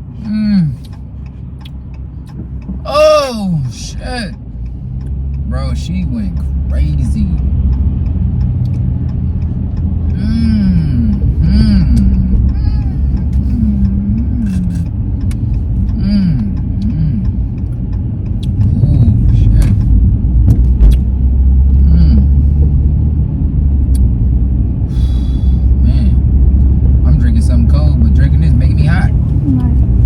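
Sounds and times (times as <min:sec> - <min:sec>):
road rumble inside car: 0:00.0 - 0:30.0
voice making rising and falling sounds: 0:10.1 - 0:14.9, 0:15.9 - 0:17.4, 0:21.7 - 0:22.6.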